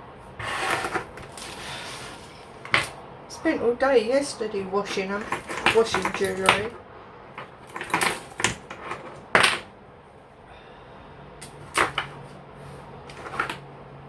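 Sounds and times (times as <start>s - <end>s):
jewellery clicking and clattering: 0.4s - 3.0s, 4.8s - 9.7s, 11.4s - 12.3s, 13.1s - 13.7s.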